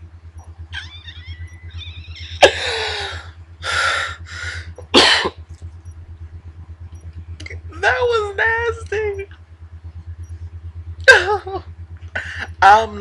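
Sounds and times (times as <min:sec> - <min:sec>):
low electrical hum: 0:00.0 - 0:13.0
person gasping and groaning: 0:02.4 - 0:04.7
person whimpering: 0:02.4 - 0:04.7.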